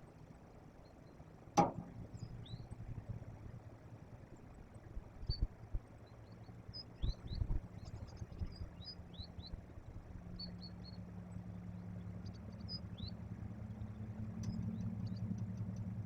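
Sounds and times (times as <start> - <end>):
low engine hum: 0.0 - 16.0
low knocks: 1.6 - 2.2
small birds chirping: 1.9 - 3.3, 4.2 - 16.0.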